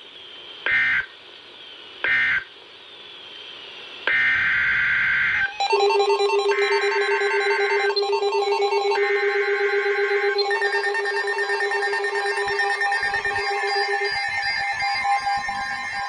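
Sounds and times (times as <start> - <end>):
alert data burst screeches: 4.1 - 16.0
electronic ringtone-like tune: 5.5 - 16.0
steady low tone: 5.6 - 15.6.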